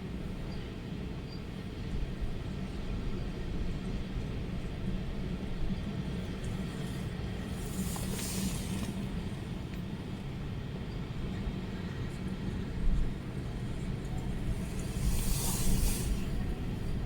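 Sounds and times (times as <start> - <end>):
wind hiss: 13.2 - 17.0.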